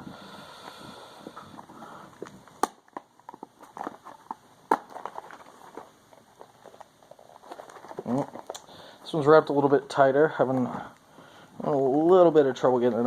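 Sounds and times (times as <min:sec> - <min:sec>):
cardboard box clicks and crinkling: 0:01.6 - 0:08.7.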